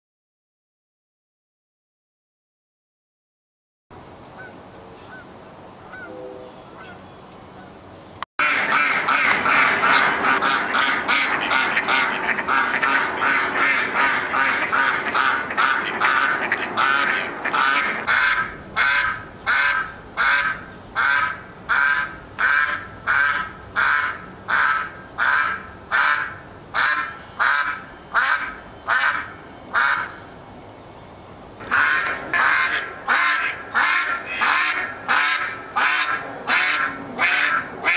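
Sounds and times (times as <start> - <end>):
duck quacking loudly: 8.4 - 30.2, 31.6 - 37.9.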